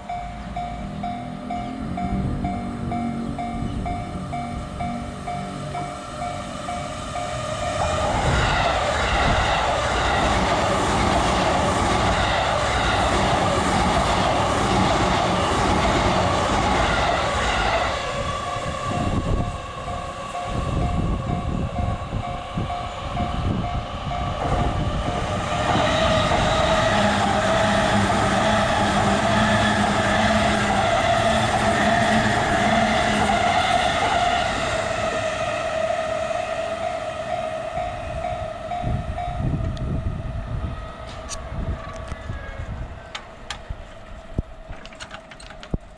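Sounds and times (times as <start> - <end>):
railway crossing bell ringing: 0.0 - 8.2, 12.5 - 24.4, 36.8 - 39.6
electric trains passing: 0.0 - 45.9.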